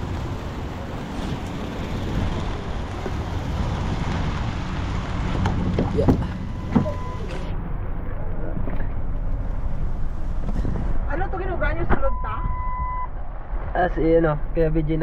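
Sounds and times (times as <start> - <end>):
engine running: 0.0 - 11.8
wind buffeting microphone: 0.0 - 15.0.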